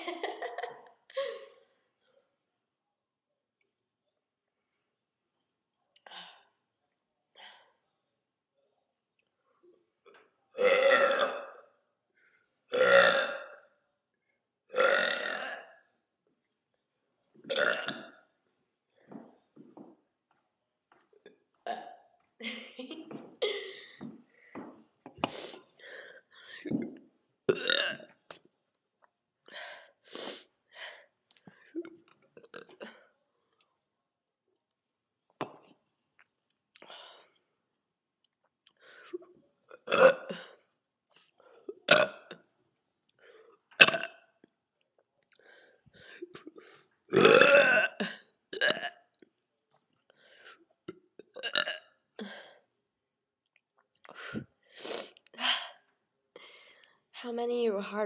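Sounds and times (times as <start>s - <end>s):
woman burping: 10.6s - 11.8s, 12.7s - 13.7s, 14.7s - 15.9s, 17.5s - 18.2s, 21.2s - 23.8s, 26.6s - 28.2s, 39.2s - 40.6s, 41.7s - 42.5s, 43.7s - 44.4s, 46.2s - 49.2s, 50.8s - 52.4s.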